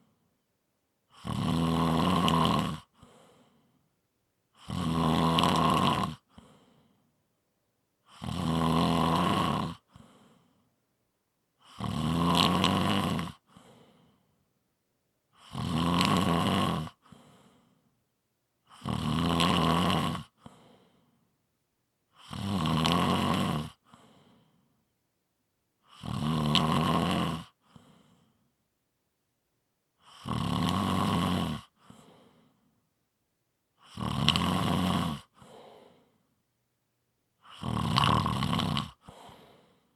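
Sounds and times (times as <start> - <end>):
person snoring: 1.1 - 3.2, 4.6 - 6.7, 8.1 - 10.3, 11.6 - 14.0, 15.4 - 17.3, 18.7 - 20.8, 22.2 - 24.1, 25.9 - 27.9, 30.0 - 32.4, 33.8 - 36.1, 37.4 - 39.8
faint breath: 2.9 - 4.0, 6.3 - 7.2, 9.9 - 10.8, 13.4 - 14.4, 17.0 - 18.0, 20.4 - 21.3, 23.8 - 24.8, 27.6 - 28.5, 31.7 - 32.8, 35.3 - 36.4, 39.0 - 39.9.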